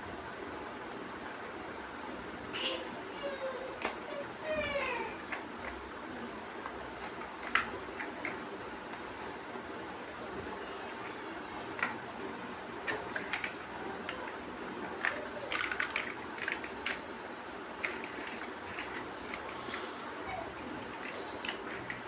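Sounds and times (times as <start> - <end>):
plastic bricks clicking together: 7.0 - 8.4, 12.8 - 17.0, 17.8 - 19.5.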